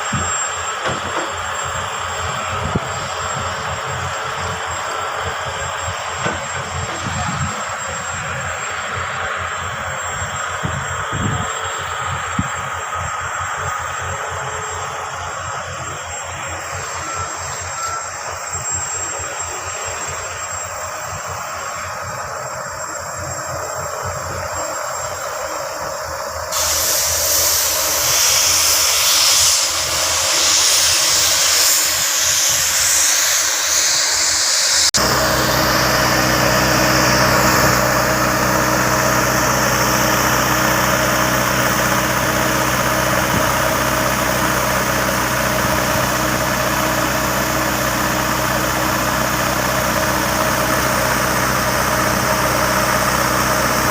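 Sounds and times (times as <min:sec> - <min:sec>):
excavator diesel engine running: 0:00.0 - 0:53.9
hiss: 0:23.8 - 0:53.9.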